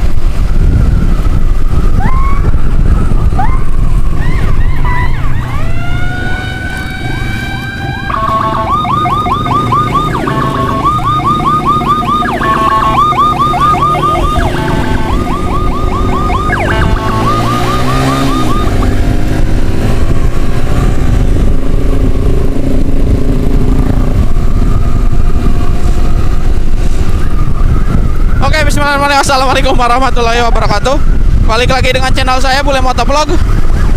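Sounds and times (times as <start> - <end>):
vehicle engine and road noise: 0.0 - 33.9
electronic emergency siren: 0.4 - 19.2, 24.2 - 29.0.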